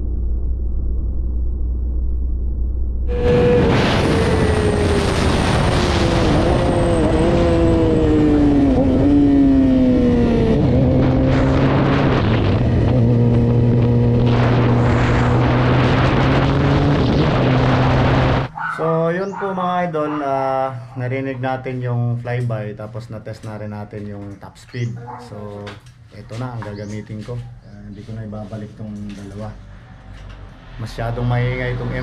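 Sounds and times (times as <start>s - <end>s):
motorcycle engine revving high: 3.1s - 18.5s.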